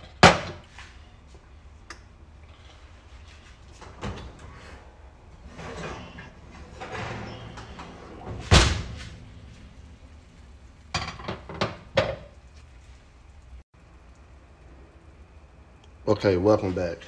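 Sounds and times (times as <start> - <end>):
loud kitchen bang: 0.0 - 0.6, 5.7 - 9.4
sharp kitchen knocks: 0.0 - 0.6, 10.9 - 12.3.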